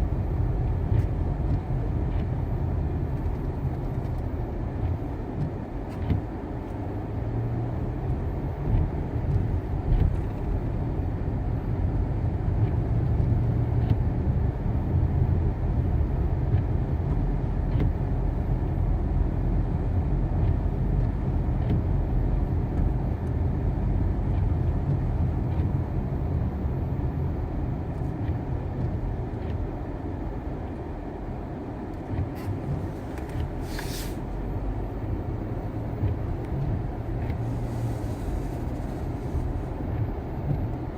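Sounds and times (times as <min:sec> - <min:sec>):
car driving on snow from inside: 0:00.0 - 0:40.9
brief hiss: 0:32.4 - 0:34.3, 0:37.4 - 0:39.5.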